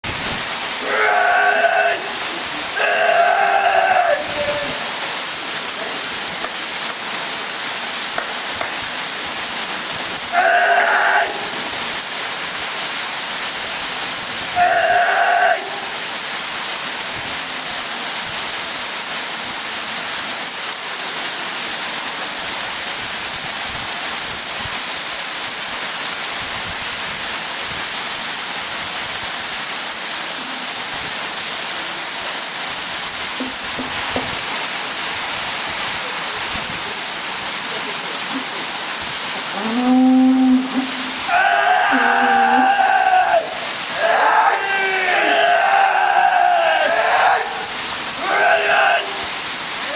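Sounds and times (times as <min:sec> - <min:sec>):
waterfall rushing: 0:00.0 - 0:49.9
person shouting: 0:41.3 - 0:47.6, 0:48.2 - 0:49.2.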